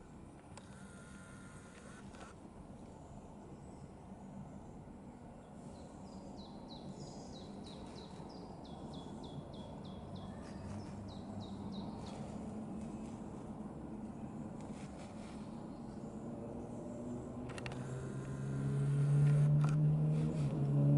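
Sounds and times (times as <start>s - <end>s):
songbird singing: 0.0s - 20.0s
low background noise: 0.0s - 20.9s.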